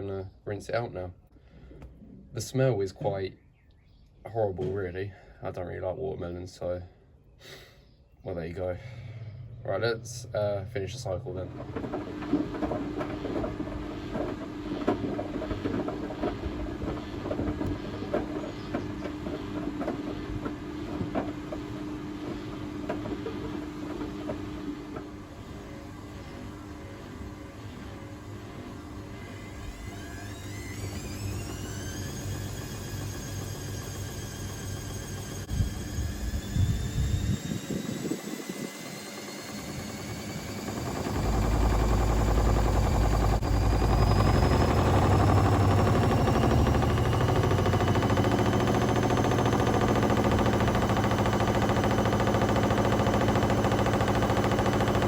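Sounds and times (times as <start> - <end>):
low rumble: 8.3 - 14.0, 40.8 - 51.0
washing machine motor hum: 8.6 - 55.0.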